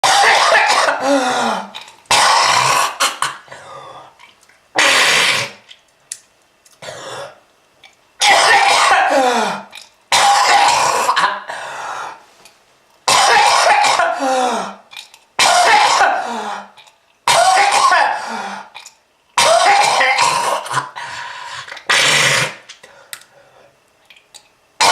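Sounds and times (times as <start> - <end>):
person coughing in harsh fits: 0.0 - 3.6, 4.8 - 5.6, 8.2 - 11.6, 13.1 - 14.4, 15.4 - 16.7, 17.3 - 18.4, 19.4 - 21.0, 21.9 - 22.6.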